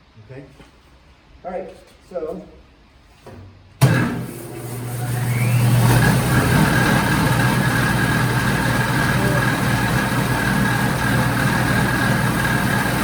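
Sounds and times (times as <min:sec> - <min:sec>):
disc sander motor whine: 0:04.7 - 0:13.0.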